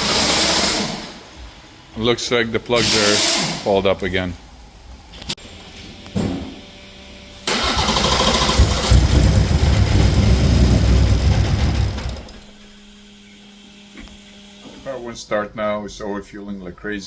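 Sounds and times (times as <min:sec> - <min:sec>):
car engine cranking on starter: 0:07.4 - 0:12.5.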